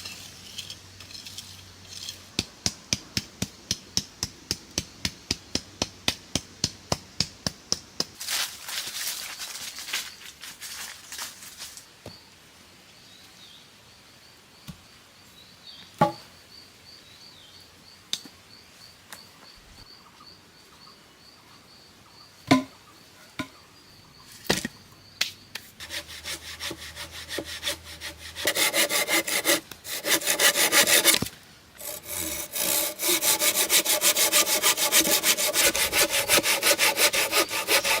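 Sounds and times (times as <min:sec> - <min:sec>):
wood being worked with strokes: 0:25.8 - 0:38.0.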